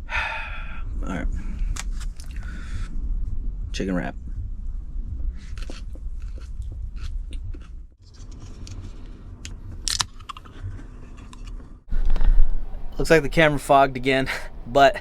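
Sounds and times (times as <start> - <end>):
steady low rumble: 0.0 - 15.0
person chewing crunchy food: 5.5 - 9.0, 9.8 - 11.6.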